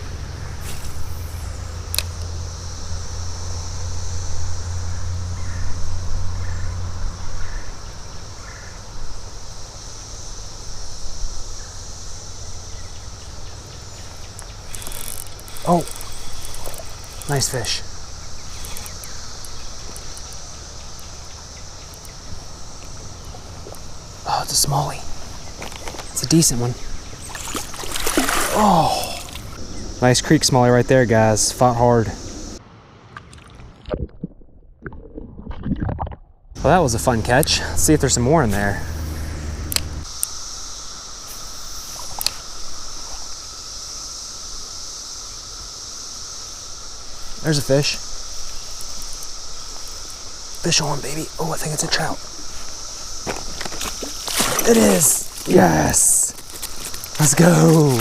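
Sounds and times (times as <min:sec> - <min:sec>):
high-pitched insect drone: 0:00.0 - 0:32.6, 0:36.6 - 0:58.0
creek water running: 0:12.0 - 0:32.1, 0:41.0 - 0:58.0
faint ticks: 0:14.2 - 0:17.7, 0:18.4 - 0:22.2, 0:41.9 - 0:43.3
low rumble: 0:29.3 - 0:32.6.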